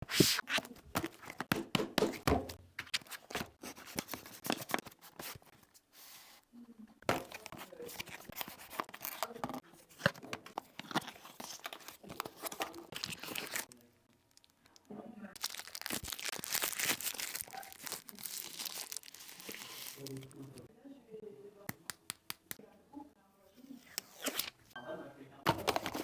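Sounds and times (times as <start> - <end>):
packaging rustling and tearing: 7.2 - 13.7, 15.4 - 20.6, 25.5 - 26.0.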